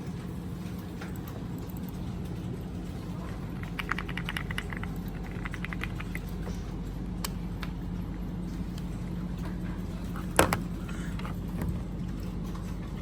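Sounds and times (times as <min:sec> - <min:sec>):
steady low hum: 0:00.0 - 0:13.0
mechanical keyboard key clicks: 0:03.8 - 0:06.2.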